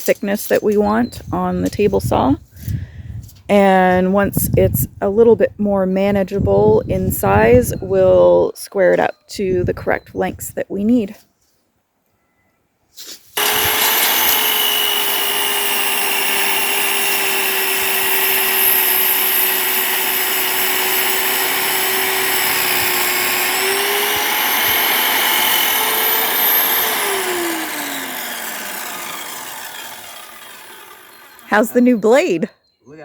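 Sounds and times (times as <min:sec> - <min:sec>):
electric power saw cutting timber: 0:13.4 - 0:31.9.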